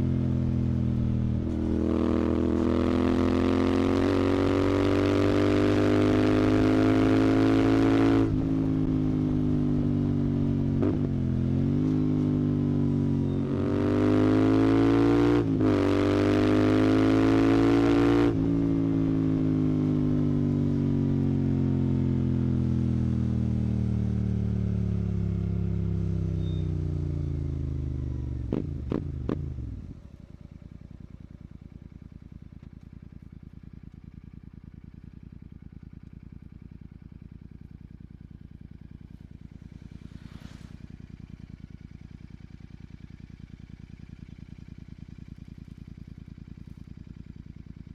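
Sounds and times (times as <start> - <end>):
motorcycle engine accelerating: 0.0 - 47.9.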